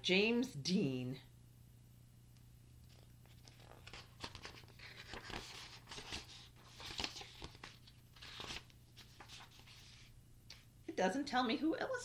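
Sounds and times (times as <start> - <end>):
book pages turning: 2.8 - 10.1.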